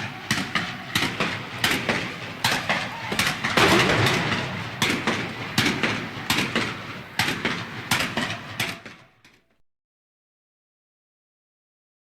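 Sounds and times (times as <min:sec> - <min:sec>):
battlefield din: 0:00.0 - 0:09.0
musket and rifle shots: 0:02.5 - 0:08.9.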